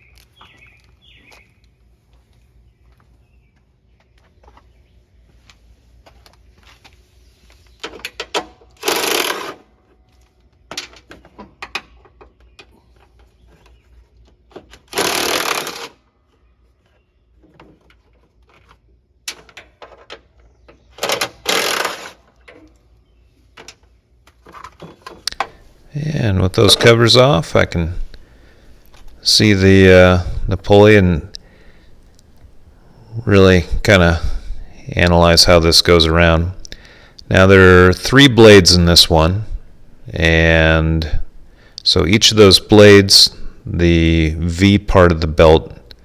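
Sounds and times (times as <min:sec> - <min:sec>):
bolts and covers clicking: 0:07.8 - 0:15.0, 0:17.4 - 0:22.9
impact wrench rattling: 0:07.9 - 0:09.7, 0:14.6 - 0:16.0, 0:21.0 - 0:22.3.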